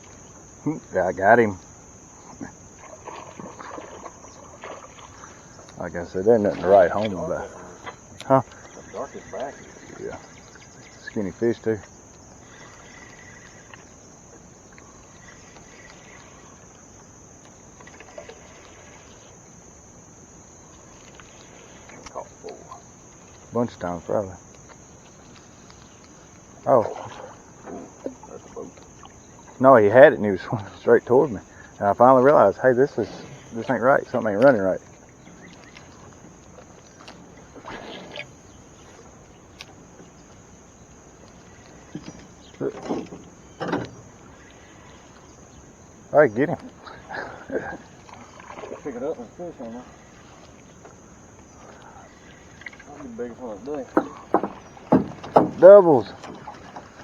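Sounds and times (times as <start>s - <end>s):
insects droning: 0.0s - 57.0s
faint clicks: 3.5s - 5.9s, 6.5s - 19.5s, 20.4s - 29.6s.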